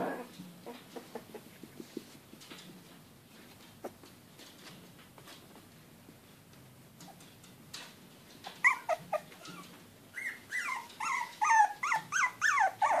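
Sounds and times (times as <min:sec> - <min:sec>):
puppies whimpering and yipping: 0:08.5 - 0:13.0.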